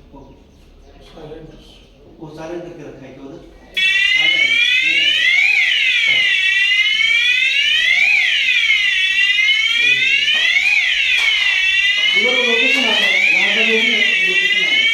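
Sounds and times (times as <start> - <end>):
fire alarm siren wailing: 3.8 - 14.9.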